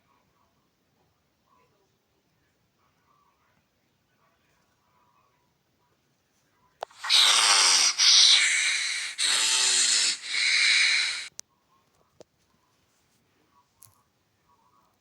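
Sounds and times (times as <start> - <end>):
person breathing raspily: 6.8 - 11.3.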